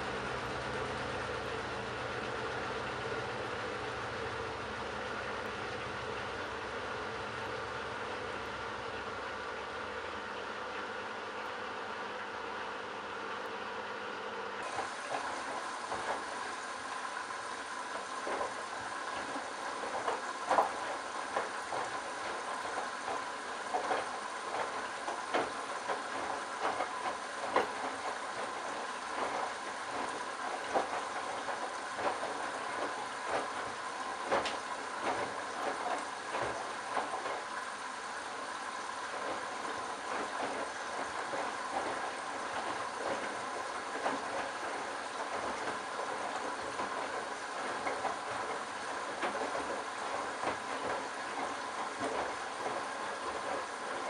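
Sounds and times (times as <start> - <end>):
washing machine motor hum: 0.0 - 54.0.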